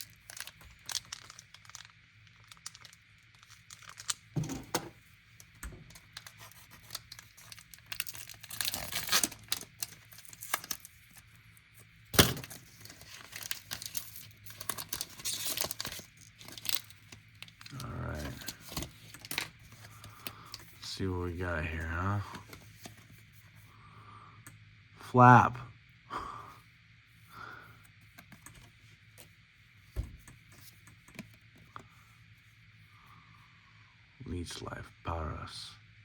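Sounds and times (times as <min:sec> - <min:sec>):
foil wrapper ripping: 0:00.0 - 0:04.5, 0:05.8 - 0:11.3, 0:12.2 - 0:20.9
foil wrappers crinkling: 0:00.0 - 0:23.2.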